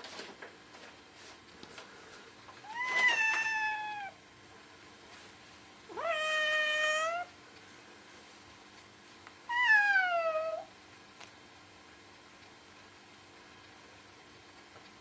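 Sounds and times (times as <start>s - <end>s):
cat meowing: 2.6s - 4.2s, 5.9s - 7.3s, 9.5s - 10.7s.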